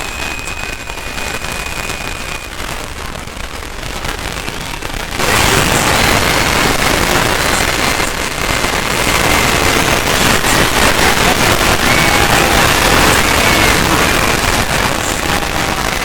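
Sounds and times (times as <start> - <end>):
faint high-pitched tones: 0.0 - 16.0
harsh distorted crackling: 0.0 - 16.0.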